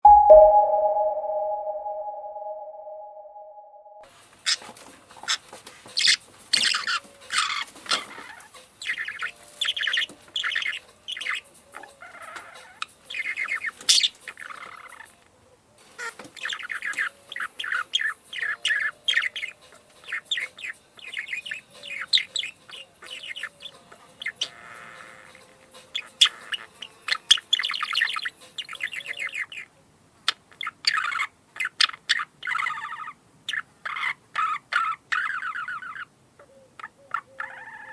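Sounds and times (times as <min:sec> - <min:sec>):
parakeet chirping and squawking: 0:06.0 - 0:15.1, 0:16.4 - 0:29.6, 0:30.6 - 0:36.0.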